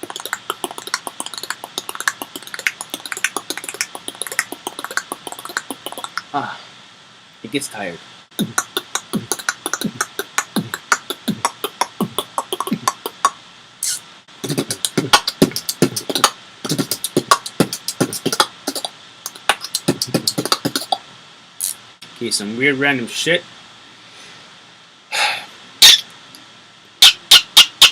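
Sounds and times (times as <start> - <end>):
beatboxing: 0.0 - 6.5, 8.3 - 21.8, 27.0 - 27.9.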